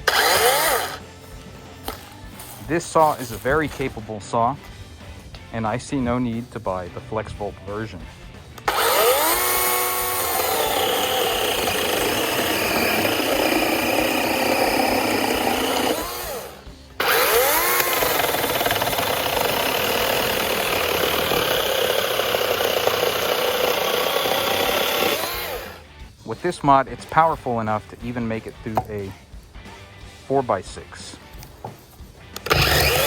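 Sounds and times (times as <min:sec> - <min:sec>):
electric chainsaw motor whine: 0:00.0 - 0:01.2, 0:08.6 - 0:25.8, 0:32.4 - 0:33.0.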